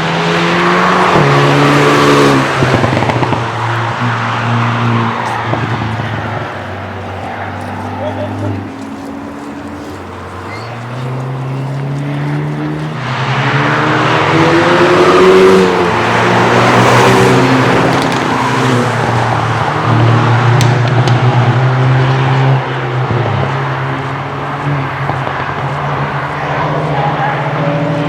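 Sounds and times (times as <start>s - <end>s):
race cars driving past: 0.0s - 28.0s
exhaust pops: 2.4s - 8.9s, 17.8s - 18.4s.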